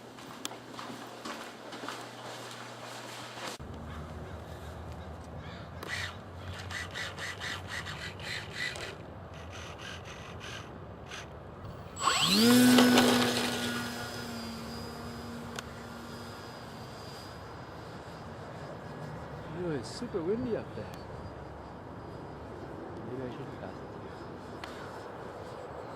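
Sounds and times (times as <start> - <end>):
model airplane engine whine: 11.6 - 25.9.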